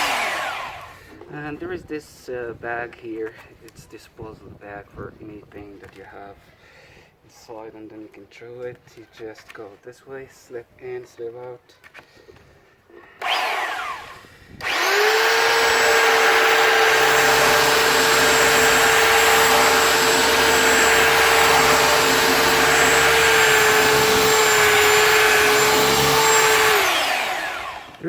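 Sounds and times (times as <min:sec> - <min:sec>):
belt sander whining: 0:00.0 - 0:01.0, 0:13.2 - 0:28.0.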